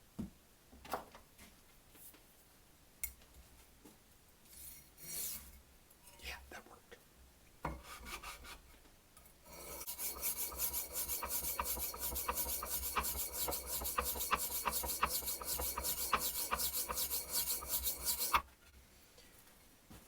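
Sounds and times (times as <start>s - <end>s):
knife scraping on sharpening stone: 9.5s - 18.4s.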